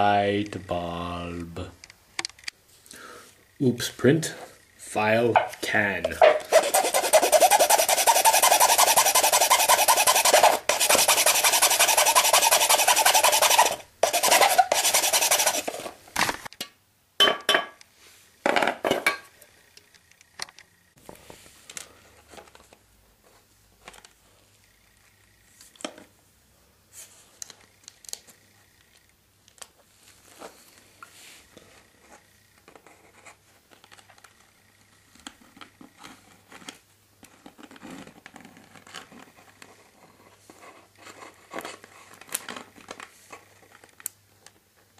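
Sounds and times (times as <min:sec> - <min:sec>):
file rasping on plastic: 0:06.2 - 0:15.8.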